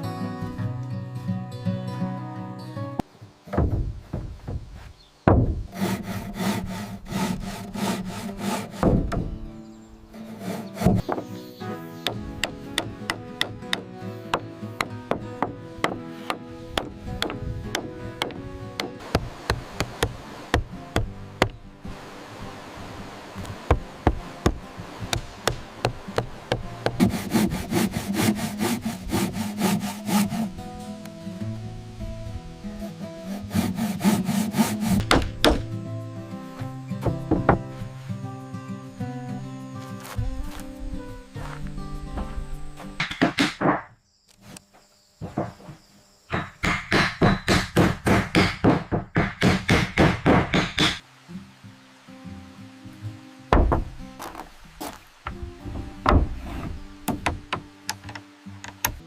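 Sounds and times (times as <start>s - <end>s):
wood knocks: 3.5s - 5.7s, 8.7s - 9.4s, 10.4s - 11.4s, 23.4s - 27.2s, 35.0s - 35.7s, 37.0s - 37.7s, 43.0s - 43.9s, 45.2s - 51.0s, 53.5s - 54.5s, 55.2s - 59.0s
hand saw sawing wood: 5.7s - 9.3s, 10.1s - 11.1s, 25.2s - 30.6s, 32.8s - 35.6s
hand tool chopping blows: 43.0s - 43.9s, 46.3s - 51.0s.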